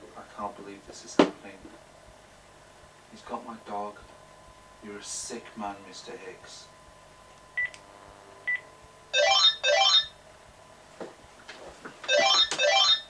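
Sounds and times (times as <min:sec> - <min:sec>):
telephone ringing: 0:09.2 - 0:10.2, 0:12.1 - 0:13.0.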